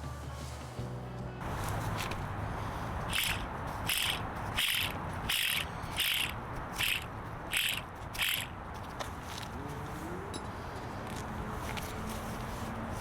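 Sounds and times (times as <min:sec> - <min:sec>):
ratchet wrench clicking: 0:03.0 - 0:08.6.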